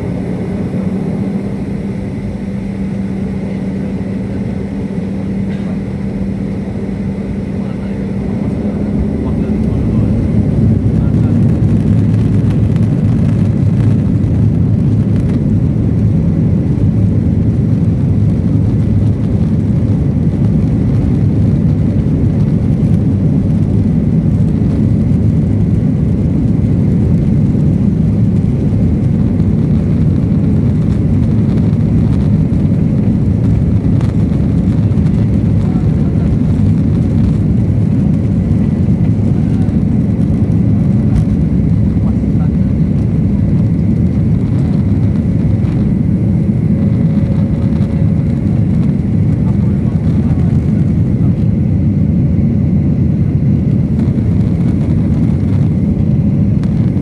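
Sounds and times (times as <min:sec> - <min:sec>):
airliner engines rumbling: 0:00.0 - 0:57.0.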